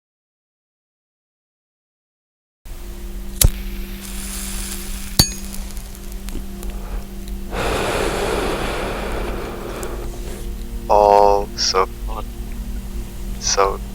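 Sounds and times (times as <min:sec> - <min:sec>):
low steady drone: 0:02.7 - 0:13.9
hissing swell: 0:03.7 - 0:13.7.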